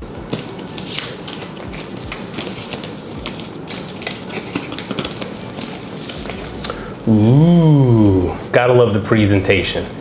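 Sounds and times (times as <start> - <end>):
cardboard packaging rustling: 0.0 - 6.8.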